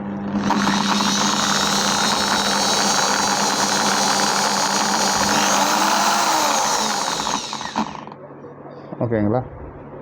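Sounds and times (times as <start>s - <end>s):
electric drill motor whine: 0.3s - 8.2s.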